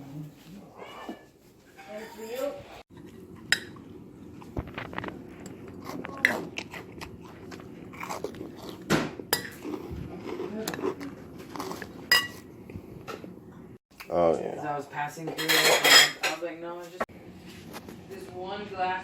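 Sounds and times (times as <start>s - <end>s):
chewing and crunching food: 2.9s - 13.0s.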